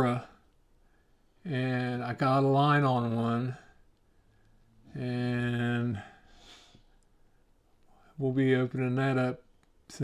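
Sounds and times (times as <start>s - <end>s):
breath through the nose: 6.3s - 6.9s.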